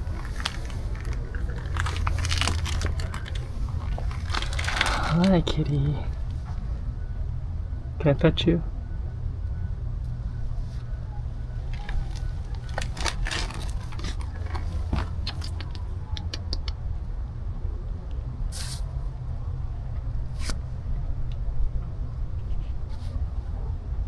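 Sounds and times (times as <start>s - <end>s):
small clicks and rustles: 0.0s - 5.2s, 11.6s - 16.4s
low rumble: 0.0s - 8.0s
short hiss: 18.5s - 18.9s.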